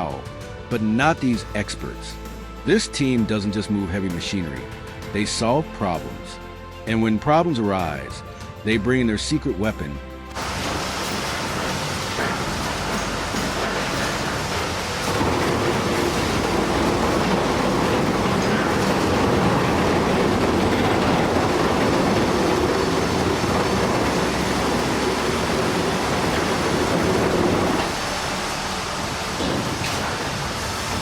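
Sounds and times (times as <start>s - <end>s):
heavy machinery rumbling: 10.3s - 31.0s.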